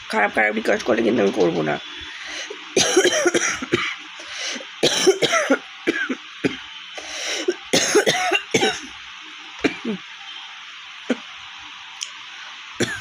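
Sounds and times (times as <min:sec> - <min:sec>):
woman coughing hoarsely: 0:02.8 - 0:04.0, 0:04.8 - 0:06.6, 0:07.4 - 0:08.9, 0:09.6 - 0:10.0.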